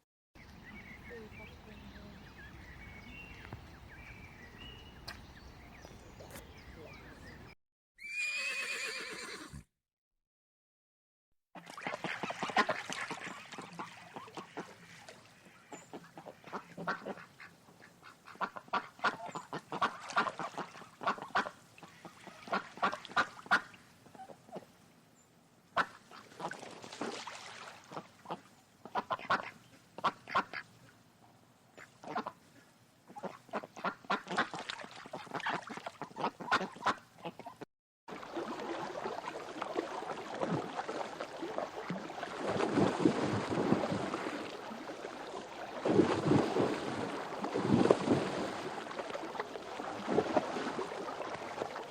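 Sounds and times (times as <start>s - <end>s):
birds calling: 0.4s - 9.4s.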